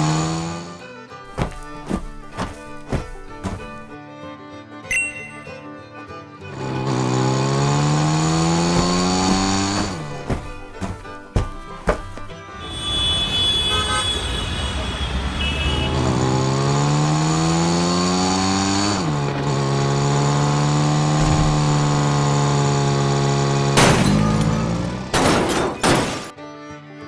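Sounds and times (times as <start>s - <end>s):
vehicle engine revving: 0.0s - 0.8s, 6.4s - 11.3s, 14.8s - 25.2s
background music: 0.0s - 12.6s
sharp loud bangs: 23.8s - 26.3s.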